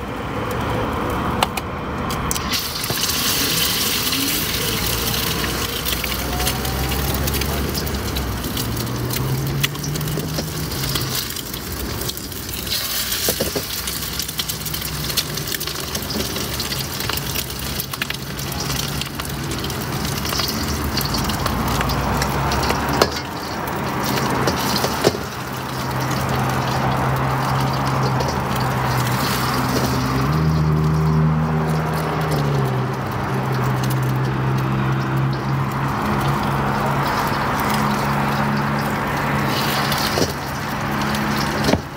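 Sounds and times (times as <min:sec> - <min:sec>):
food sizzling in a pan: 0:02.4 - 0:41.9.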